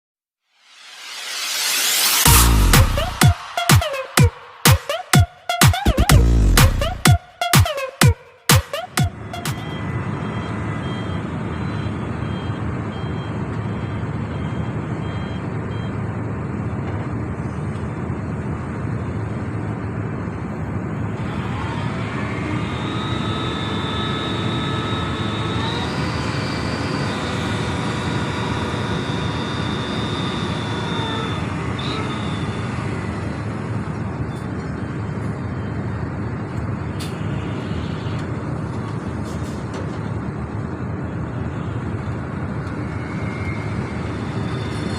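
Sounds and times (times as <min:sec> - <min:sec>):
high whine: 0:00.5 - 0:11.0, 0:21.0 - 0:34.5, 0:41.2 - 0:44.9
excavator diesel engine running: 0:18.5 - 0:44.9.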